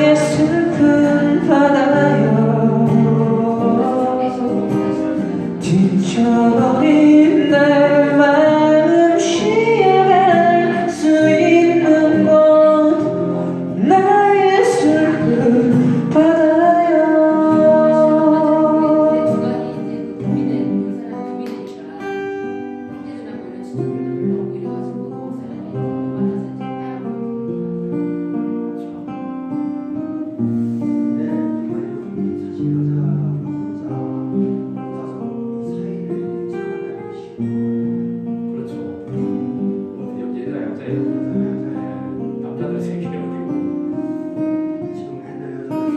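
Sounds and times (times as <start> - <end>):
person singing: 0.0 - 20.6
acoustic guitar: 0.0 - 45.9.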